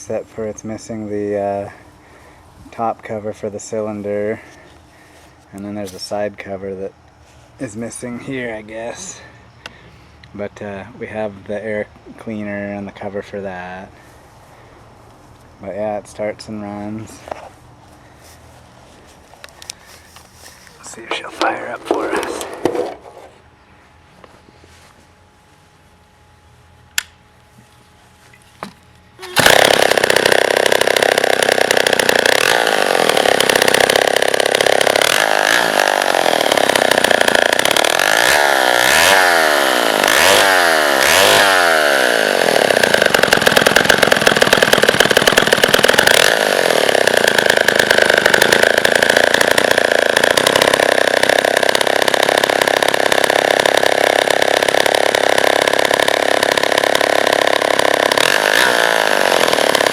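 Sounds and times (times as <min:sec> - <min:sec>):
chainsaw clicks: 0:29.2 - 0:59.9
chainsaw engine revving: 0:29.2 - 0:59.9.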